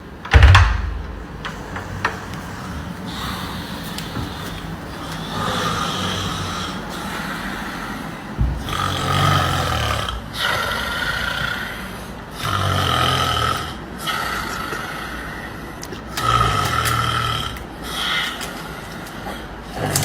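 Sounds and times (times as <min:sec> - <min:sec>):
quiet breathing: 0:00.9 - 0:12.5, 0:13.8 - 0:20.0
person snoring: 0:01.2 - 0:15.4.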